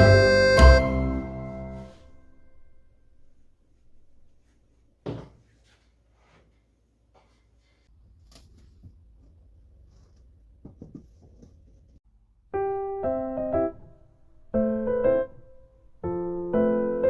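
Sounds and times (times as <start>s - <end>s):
piano chords: 0.0s - 2.4s, 12.5s - 17.0s.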